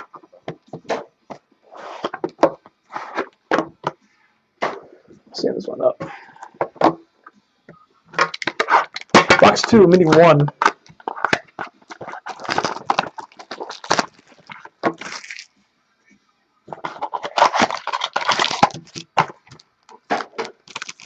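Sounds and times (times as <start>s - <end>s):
packaging crackling and clicking: 8.2s - 9.8s, 10.4s - 15.5s, 16.8s - 21.0s.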